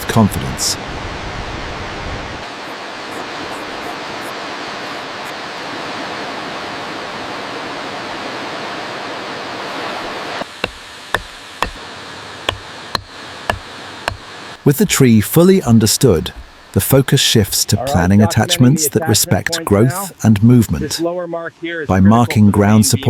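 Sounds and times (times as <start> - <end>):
waterfall rushing: 0.0 - 21.1
sharp knocks: 10.4 - 11.8, 12.5 - 14.3.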